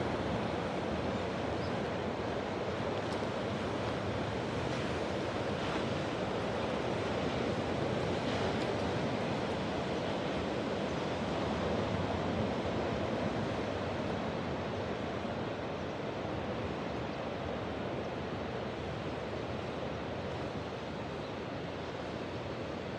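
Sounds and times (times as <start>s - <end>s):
ocean surf washing ashore: 0.0s - 16.8s.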